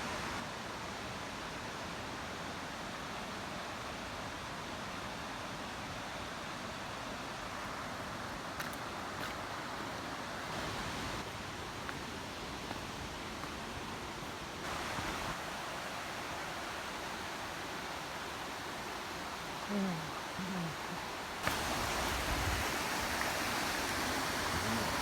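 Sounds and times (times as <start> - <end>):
waterfall rushing: 14.6 - 25.0.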